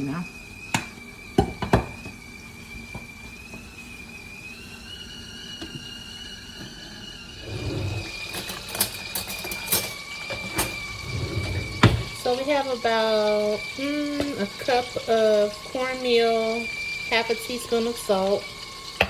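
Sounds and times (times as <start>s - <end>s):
kitchen utensils and dishes clinking: 7.4s - 12.3s.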